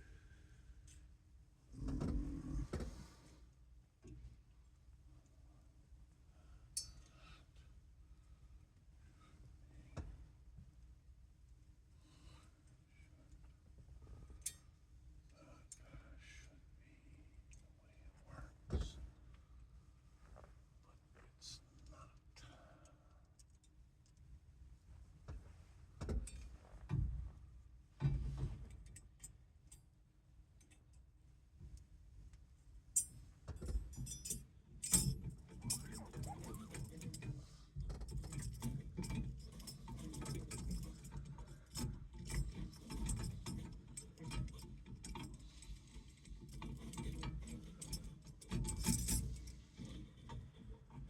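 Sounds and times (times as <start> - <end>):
metal parts and tools clinking: 33.0 - 37.3, 37.9 - 51.0.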